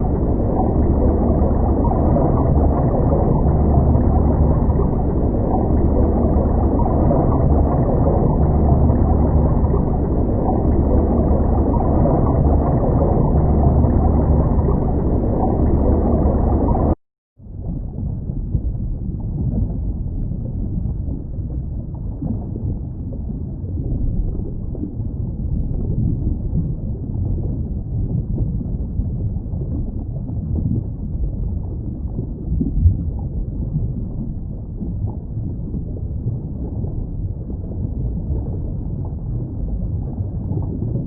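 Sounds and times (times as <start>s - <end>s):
underwater rumble of moving water: 0.0s - 41.0s.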